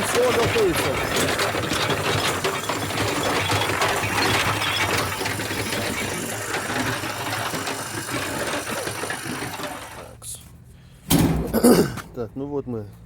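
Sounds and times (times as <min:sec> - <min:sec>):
stones clattering in tumbling drum: 0:00.0 - 0:10.1
motor hum: 0:00.0 - 0:10.2.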